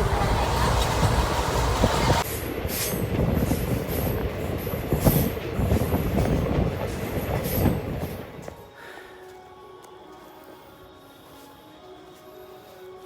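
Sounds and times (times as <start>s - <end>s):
train wheels clacking: 0.0s - 8.4s
train rumbling on rails: 0.0s - 8.7s.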